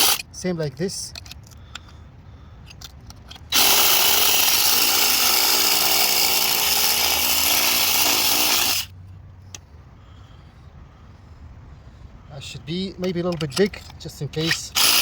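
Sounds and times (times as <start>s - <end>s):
power tool cutting steel: 0.0s - 0.2s, 3.5s - 8.9s, 14.4s - 15.0s.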